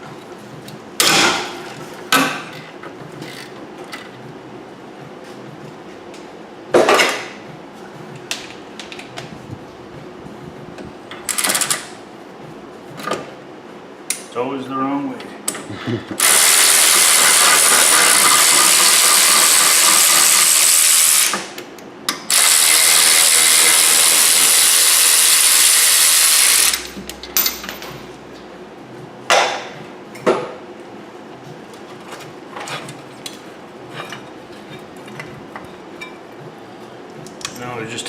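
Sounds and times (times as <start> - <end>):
pneumatic air ratchet spinning: 16.2 - 21.5, 22.3 - 27.0.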